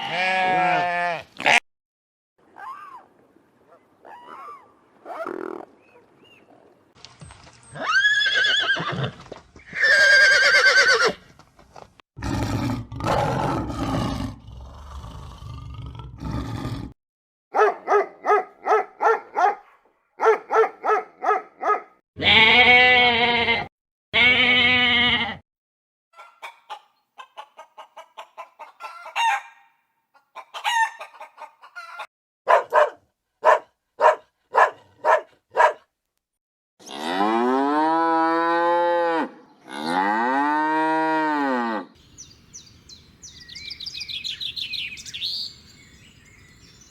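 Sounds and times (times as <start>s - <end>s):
chickens clucking: 26.2s - 29.3s, 30.2s - 32.1s.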